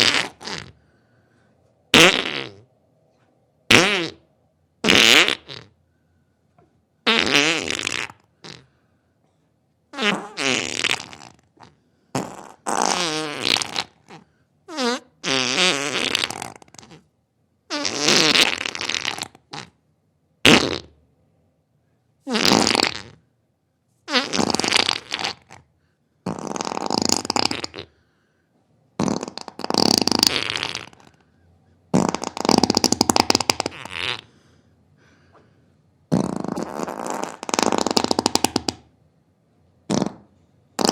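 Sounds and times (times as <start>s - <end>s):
farts: 0.0s - 0.8s, 1.9s - 2.7s, 3.7s - 5.8s, 7.0s - 8.7s, 9.9s - 17.1s, 17.7s - 19.8s, 20.4s - 21.0s, 22.2s - 23.2s, 24.1s - 28.0s, 29.0s - 31.2s, 31.9s - 34.3s, 36.1s - 38.9s, 39.8s - 40.9s.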